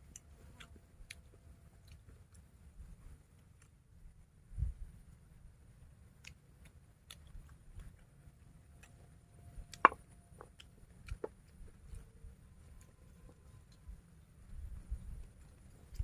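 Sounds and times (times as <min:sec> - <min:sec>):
person chewing: 0:06.2 - 0:08.0, 0:09.6 - 0:12.2.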